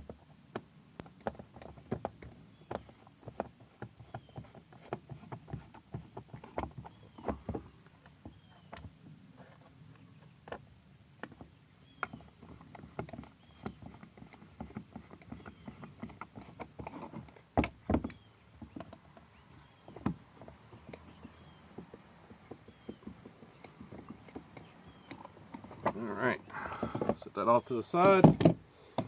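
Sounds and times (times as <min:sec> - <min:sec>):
plastic parts clicking and knocking: 0:12.0 - 0:27.2, 0:28.0 - 0:29.0.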